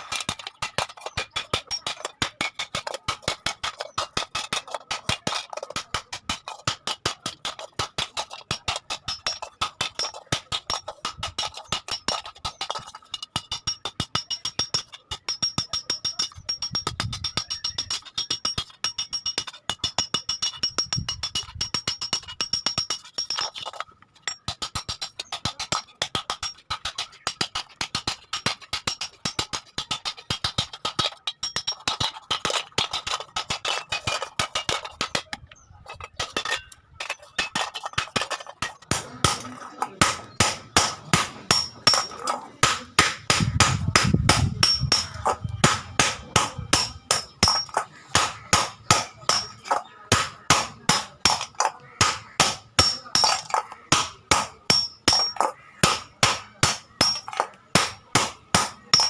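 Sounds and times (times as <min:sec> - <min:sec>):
hammer striking iron on anvil: 0:00.0 - 0:23.6, 0:36.2 - 0:59.0.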